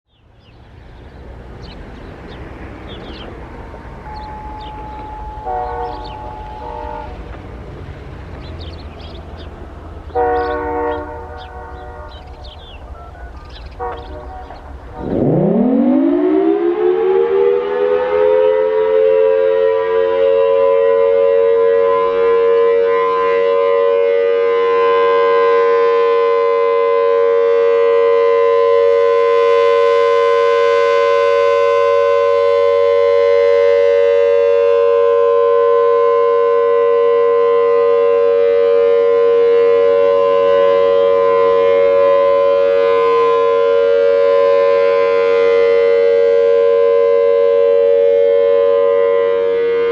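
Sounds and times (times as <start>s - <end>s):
warning siren: 1.3s - 49.9s.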